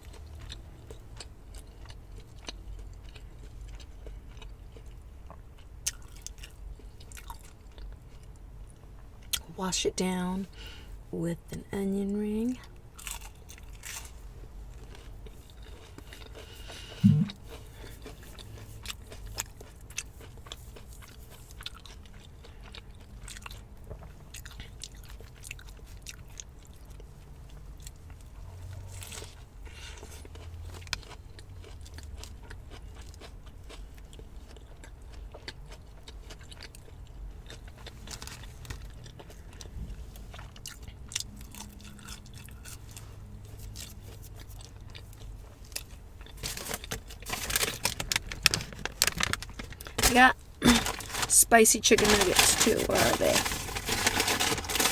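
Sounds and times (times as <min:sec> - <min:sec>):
crunching and chewing: 0:00.0 - 0:09.5, 0:12.6 - 0:54.9
throaty sound: 0:16.9 - 0:17.4
wet mouth clicks: 0:17.0 - 0:17.4.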